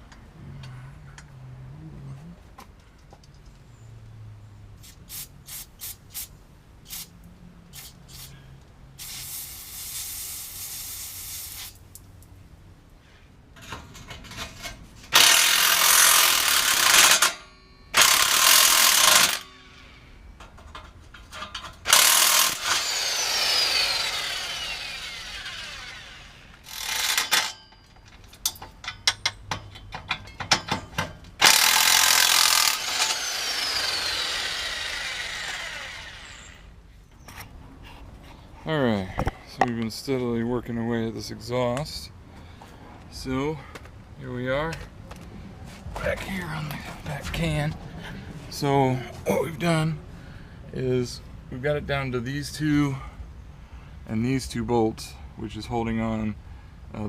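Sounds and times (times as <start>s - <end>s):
hand ratchet clicking: 15.1s - 17.4s, 18.0s - 19.5s, 21.3s - 24.2s, 26.6s - 33.2s
impact wrench bursts: 15.1s - 19.9s, 21.2s - 36.8s
power tool spinning down whine: 21.9s - 27.5s, 31.4s - 36.7s.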